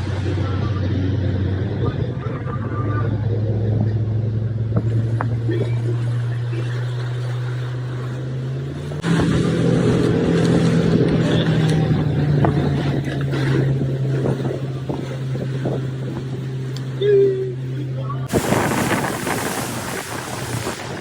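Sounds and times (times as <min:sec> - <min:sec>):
engine running: 0:00.0 - 0:21.0
rushing noise: 0:18.3 - 0:21.0.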